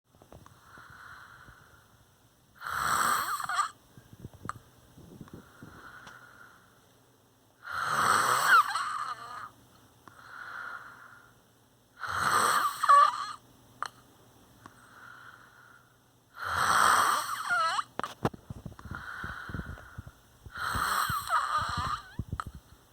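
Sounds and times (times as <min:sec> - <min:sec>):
person snoring: 0:02.6 - 0:03.8, 0:07.6 - 0:09.5, 0:12.0 - 0:13.4, 0:16.4 - 0:17.9, 0:18.8 - 0:22.5.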